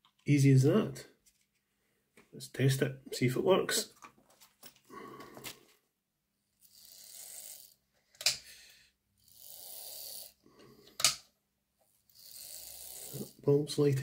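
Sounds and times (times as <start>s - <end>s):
slow breathing: 4.8s - 5.8s, 8.0s - 9.0s, 10.3s - 11.0s.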